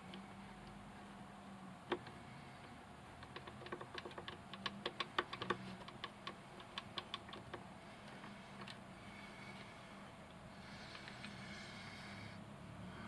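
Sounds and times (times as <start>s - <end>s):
small clicks and taps: 1.9s - 8.8s.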